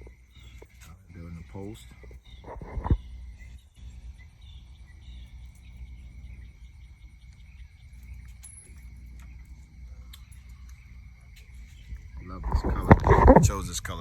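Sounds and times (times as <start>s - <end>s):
crickets trilling: 0.0s - 14.0s
low steady rumble: 0.0s - 14.0s.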